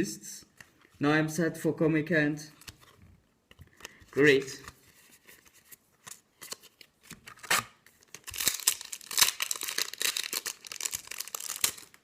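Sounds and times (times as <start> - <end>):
foil wrapper tearing and crinkling: 7.4 - 12.0.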